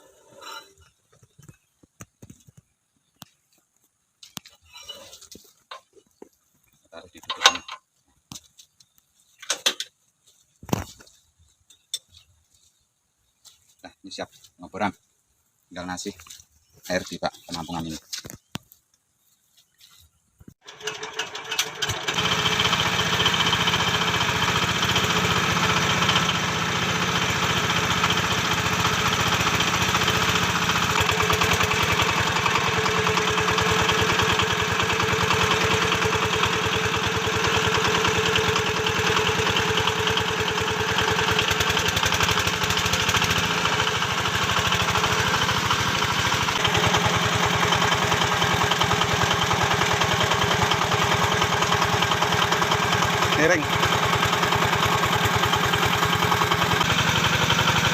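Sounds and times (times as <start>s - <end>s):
drilling rig engine running: 20.6s - 57.9s.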